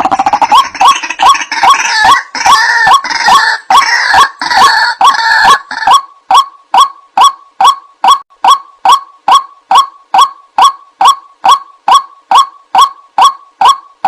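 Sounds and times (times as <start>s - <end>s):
harsh chorus of bird calls: 0.0s - 6.1s
bird honking kwak calls: 0.0s - 14.0s.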